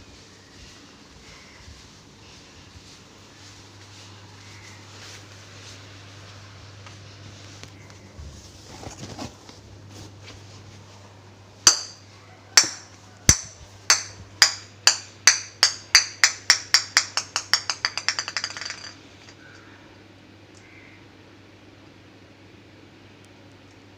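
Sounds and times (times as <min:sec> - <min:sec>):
ball bouncing on hard floor: 0:15.3 - 0:19.0.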